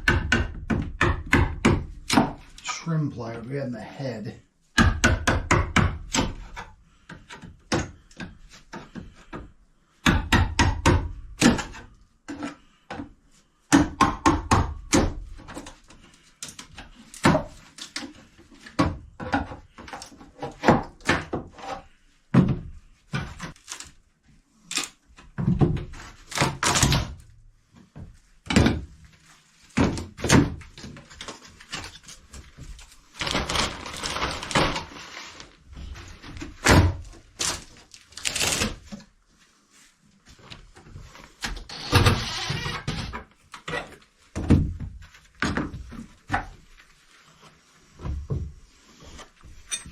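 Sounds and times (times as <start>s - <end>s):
wooden knocks and thuds: 0.0s - 2.4s, 18.6s - 21.6s, 22.3s - 23.6s, 25.2s - 26.6s, 27.8s - 29.0s, 29.8s - 31.1s, 44.3s - 46.6s.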